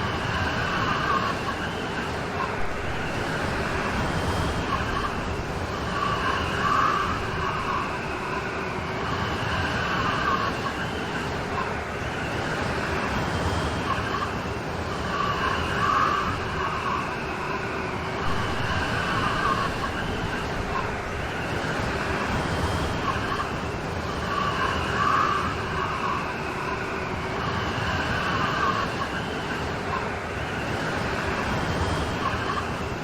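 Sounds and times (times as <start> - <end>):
steady rain: 14.9 - 32.7.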